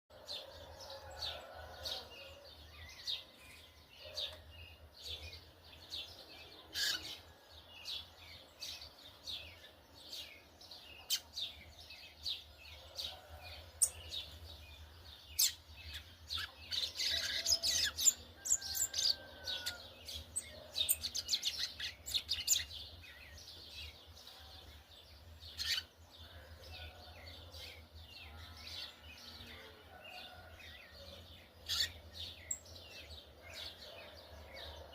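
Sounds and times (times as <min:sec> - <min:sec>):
bird chattering song: 0:13.8 - 0:24.0, 0:25.5 - 0:27.0, 0:31.1 - 0:34.0.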